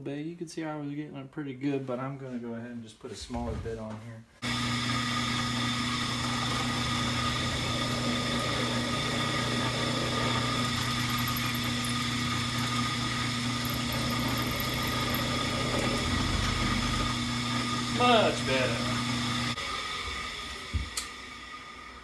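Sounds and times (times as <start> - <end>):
drill press motor running: 4.4 - 21.9
drill bit squealing on metal: 6.0 - 19.0.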